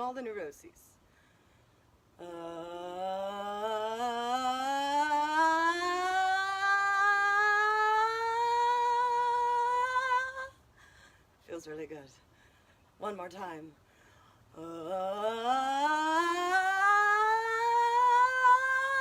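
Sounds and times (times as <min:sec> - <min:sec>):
person singing rising vocal tone: 0:02.2 - 0:10.6, 0:14.5 - 0:19.0.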